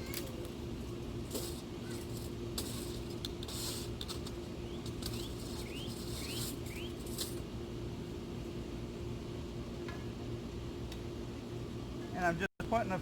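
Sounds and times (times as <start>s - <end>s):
charcoal briquettes clicking and clattering: 0.1s - 7.4s.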